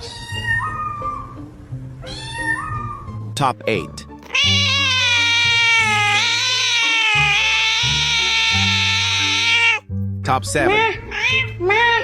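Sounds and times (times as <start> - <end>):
cat yowling: 0.0 - 1.4, 2.0 - 3.2, 4.2 - 9.8, 10.7 - 12.0.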